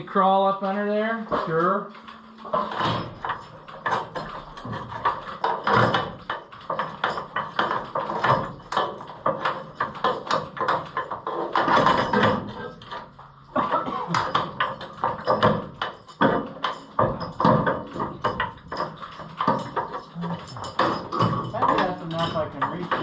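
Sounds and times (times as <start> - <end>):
metal knocks clanks and rattles: 1.0 - 23.0.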